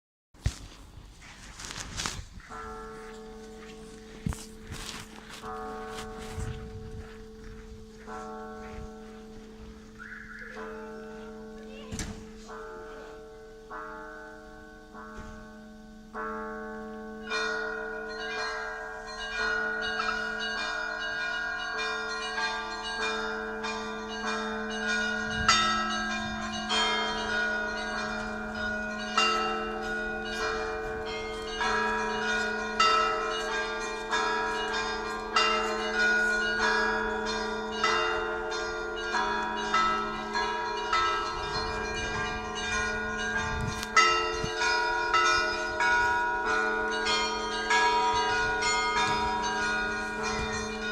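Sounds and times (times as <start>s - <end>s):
church bells ringing: 1.3s - 50.9s.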